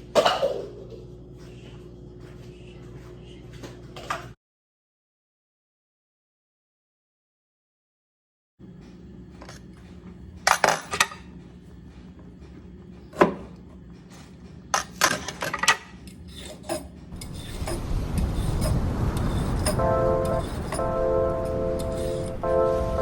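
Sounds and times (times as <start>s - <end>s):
low background hum: 0.0s - 4.4s, 8.6s - 23.0s
dishes and cutlery clinking: 14.2s - 22.6s
steady hiss: 17.2s - 23.0s.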